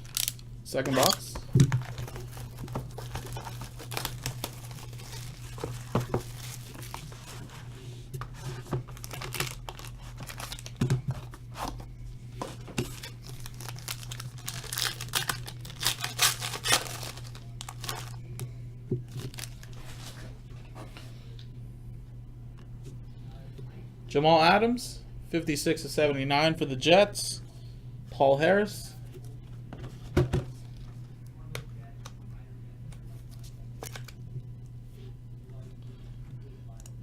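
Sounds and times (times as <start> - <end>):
plastic wrapping crinkling: 0.0 - 7.7, 8.4 - 10.8, 12.8 - 18.4, 19.0 - 20.2
steady low hum: 0.0 - 37.0.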